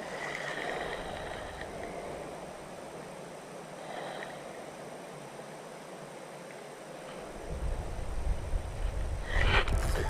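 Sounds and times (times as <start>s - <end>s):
flowing creek water: 0.0s - 8.3s
wind buffeting microphone: 7.3s - 10.0s.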